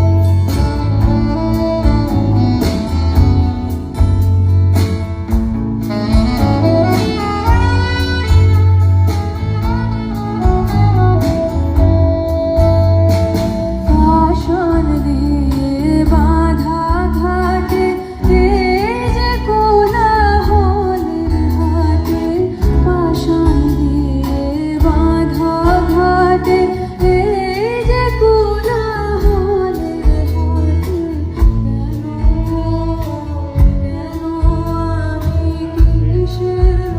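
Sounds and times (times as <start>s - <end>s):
bass and drums: 0.0s - 36.9s.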